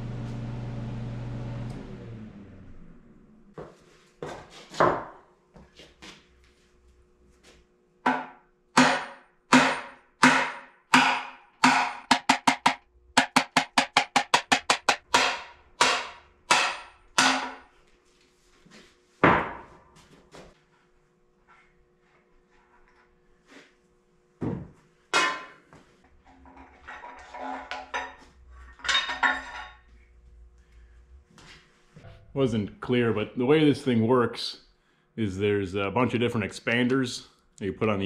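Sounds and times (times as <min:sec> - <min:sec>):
hammer striking metal: 0:08.1 - 0:17.7.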